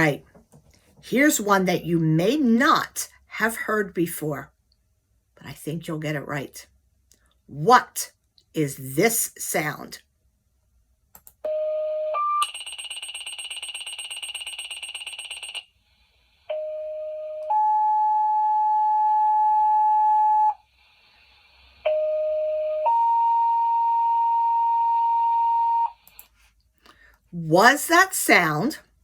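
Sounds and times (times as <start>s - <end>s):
rapid high pager beeping: 12.2s - 15.7s.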